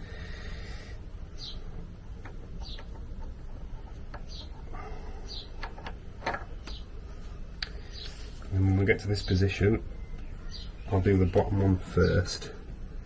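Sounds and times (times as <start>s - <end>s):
bird chirping: 1.3s - 5.8s, 6.5s - 7.0s, 7.7s - 12.6s.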